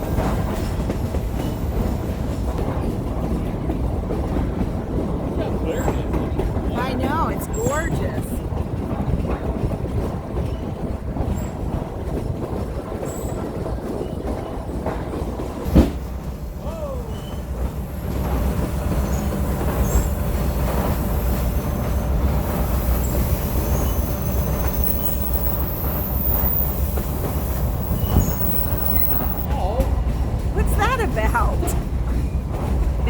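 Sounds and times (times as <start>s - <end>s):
train rumbling on rails: 0.0s - 33.0s
faint high wheel squeal: 21.3s - 29.5s.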